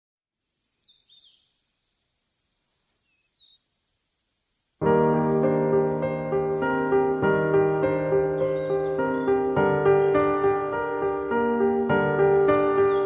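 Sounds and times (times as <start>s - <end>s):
crickets droning: 0.3s - 13.0s
bird chirps: 0.6s - 1.6s, 2.5s - 3.9s, 6.7s - 13.0s
piano background music: 4.8s - 13.0s.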